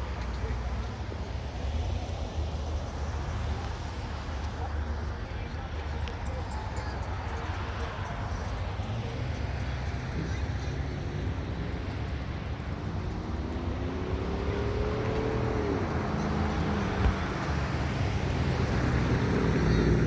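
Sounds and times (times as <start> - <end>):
traffic rumble: 0.0 - 20.0
vehicle passing by: 7.6 - 20.0.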